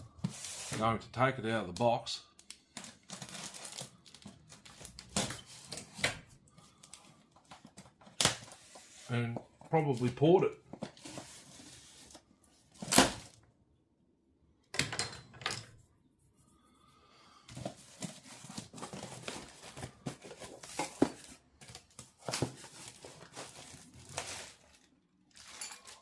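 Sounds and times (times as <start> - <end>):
cardboard and plastic tearing: 2.7 - 6.0, 10.9 - 13.4, 17.8 - 26.0.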